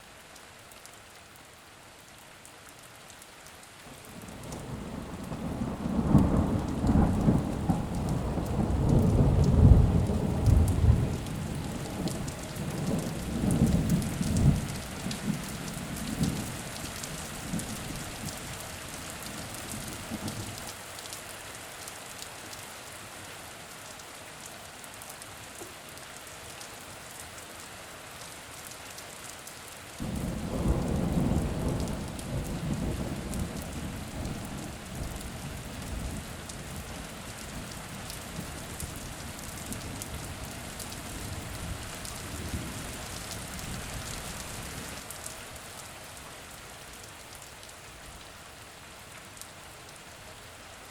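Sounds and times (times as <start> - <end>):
rolling thunder rumble: 4.6 - 15.4, 30.0 - 35.2
rain hissing: 30.0 - 45.7.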